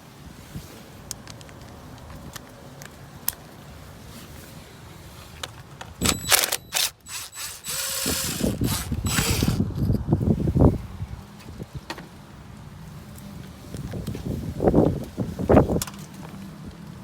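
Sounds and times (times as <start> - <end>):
ratchet wrench clicking: 6.0 - 9.7.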